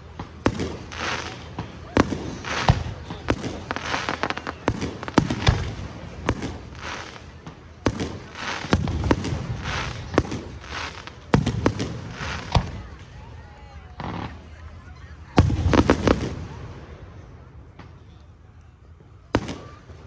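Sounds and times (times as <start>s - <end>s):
fireworks booming: 0.0s - 13.0s, 15.3s - 18.0s
fireworks crackling and hissing: 0.0s - 20.0s.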